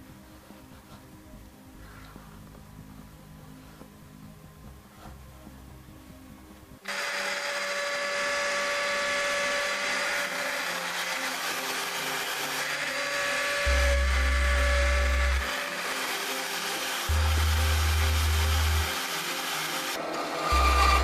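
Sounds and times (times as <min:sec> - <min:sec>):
power tool motor whining: 0:06.8 - 0:21.0.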